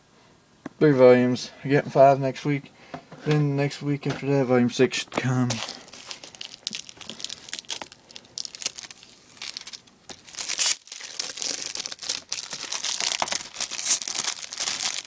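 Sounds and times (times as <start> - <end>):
plastic shrink wrap crackling: 5.5 - 15.0.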